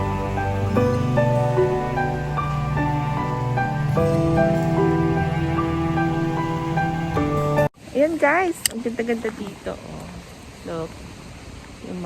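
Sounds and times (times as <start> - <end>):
soft slow background music: 0.0 - 7.7
rain-like patter: 0.0 - 12.0.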